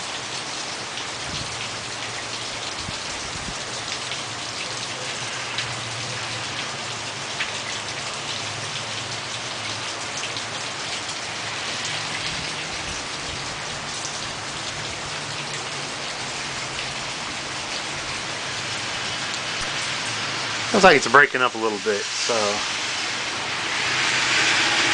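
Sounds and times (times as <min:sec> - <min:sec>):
rain pattering on surfaces: 0:00.0 - 0:24.3.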